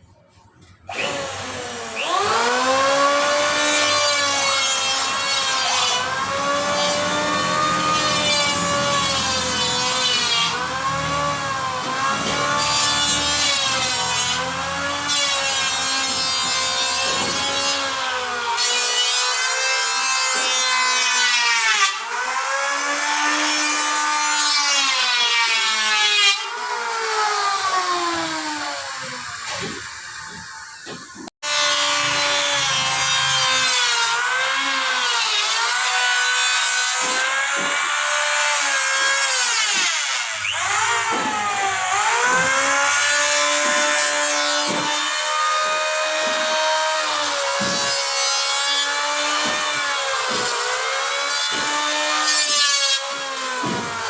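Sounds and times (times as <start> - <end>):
power tool cutting wood: 0.9 - 54.0.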